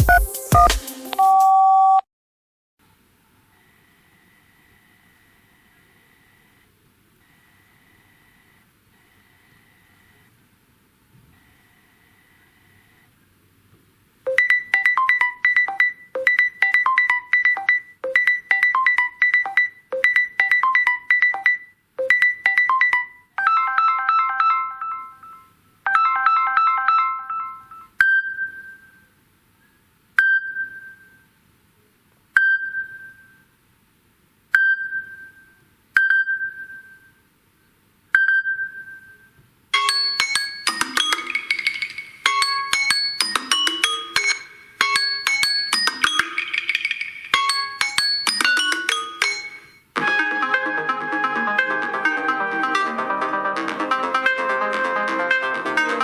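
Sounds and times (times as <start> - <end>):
fast ringtone tune: 0.0 - 2.0, 14.3 - 28.9, 39.8 - 56.0
plinking ringtone figure: 14.3 - 29.0, 39.8 - 49.8
held chime chords: 39.8 - 49.8.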